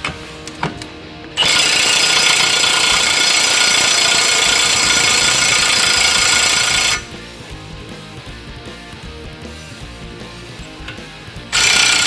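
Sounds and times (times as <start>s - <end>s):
impact wrench hammering: 0.0s - 7.1s, 10.6s - 12.0s.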